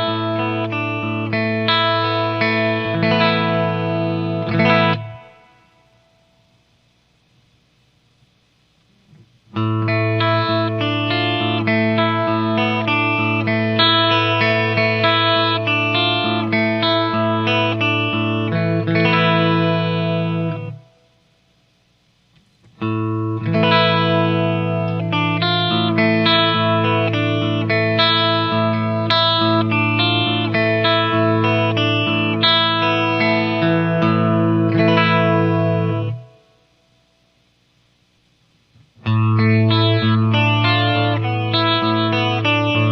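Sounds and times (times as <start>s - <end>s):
electric guitar with chorus effect: 0.0s - 6.4s, 8.8s - 21.2s, 22.4s - 37.1s, 38.7s - 42.9s.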